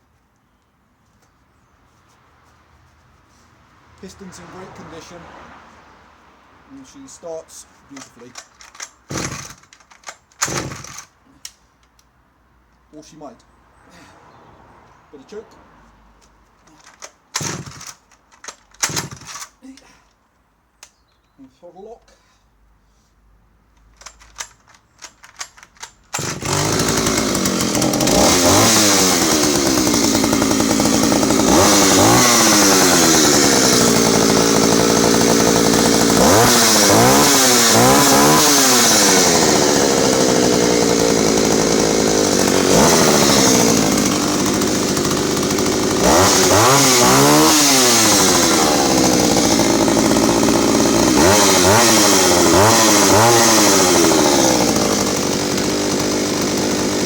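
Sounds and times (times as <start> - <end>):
chainsaw engine revving: 7.9 - 11.1, 16.8 - 19.6, 26.1 - 57.0
sharp clicks: 7.9 - 12.1, 16.2 - 19.6, 20.8 - 21.5, 23.7 - 26.6.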